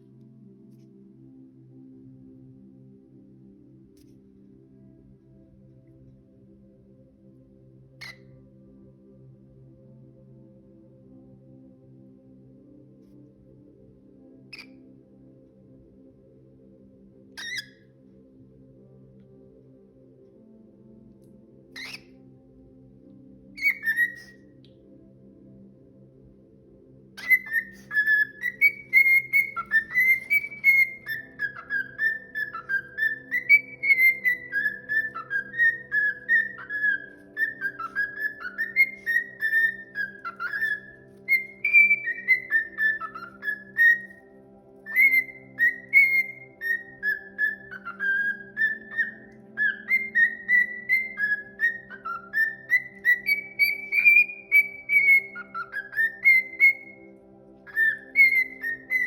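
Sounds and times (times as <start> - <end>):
soft music drone: 0.0 - 59.0
bird singing whistled notes: 8.0 - 8.3, 14.5 - 14.8, 17.4 - 17.9, 21.8 - 22.2, 23.6 - 24.5, 27.2 - 59.0.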